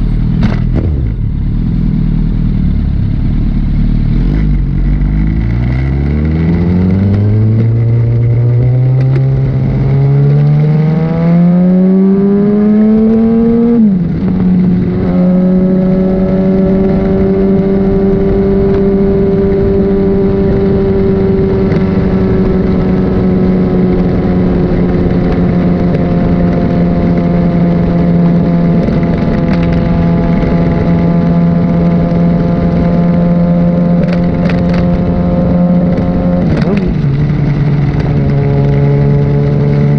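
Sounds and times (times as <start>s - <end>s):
motorcycle engine pulling hard: 0.0s - 39.9s
wind rush: 4.1s - 39.9s.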